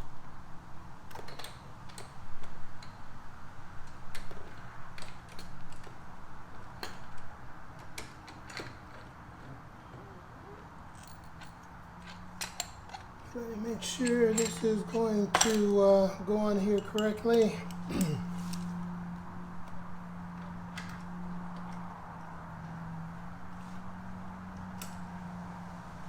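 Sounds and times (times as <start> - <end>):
metal hardware clicks and taps: 15.3 - 15.7.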